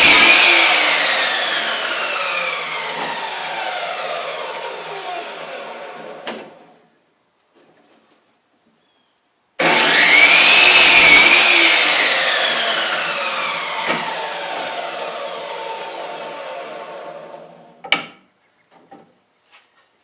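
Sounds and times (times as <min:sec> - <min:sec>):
power saw cutting wood: 0:00.0 - 0:06.8, 0:09.6 - 0:17.8.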